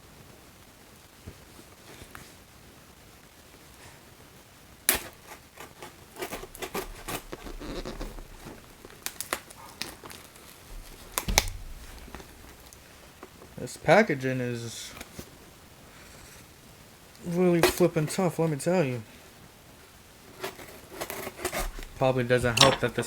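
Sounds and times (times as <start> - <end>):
knife cutting packaging: 4.9 - 11.3, 20.4 - 22.5.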